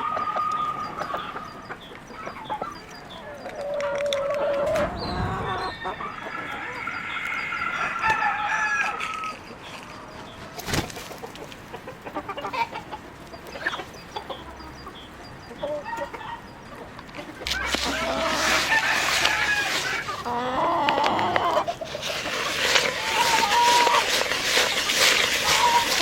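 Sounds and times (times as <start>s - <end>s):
chickens clucking: 0.0s - 26.0s
rooster crowing: 3.8s - 9.4s, 17.5s - 21.7s, 25.4s - 26.0s.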